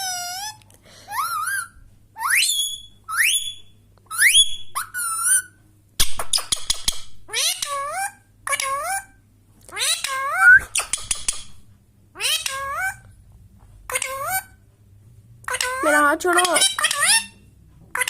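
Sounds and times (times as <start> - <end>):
parrot whistled calls: 1.1 - 5.6, 10.0 - 10.9.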